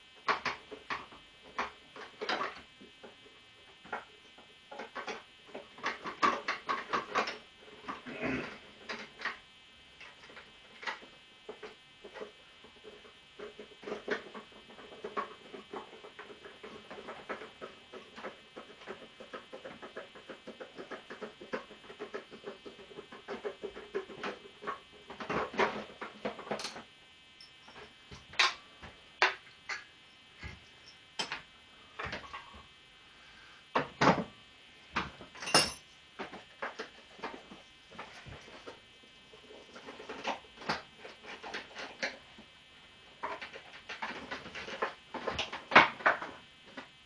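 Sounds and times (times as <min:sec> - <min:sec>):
hand tools and parts clattering: 0:35.0 - 0:38.7.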